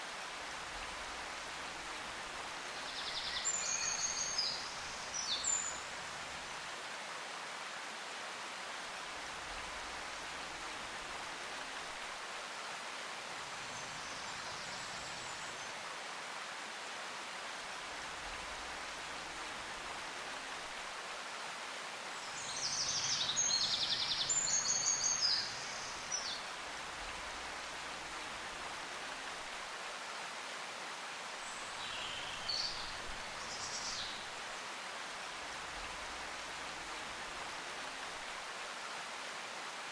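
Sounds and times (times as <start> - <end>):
outdoor ambient hiss: 0.0 - 39.9.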